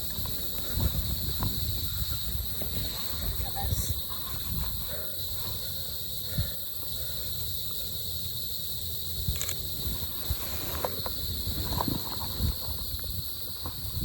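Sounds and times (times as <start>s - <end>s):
insects chirring: 0.0s - 14.0s.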